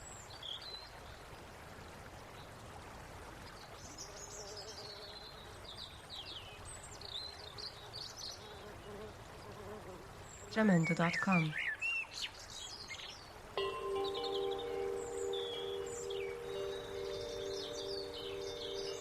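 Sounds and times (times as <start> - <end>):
flowing water: 0.0 - 19.0
small birds chirping: 10.2 - 19.0.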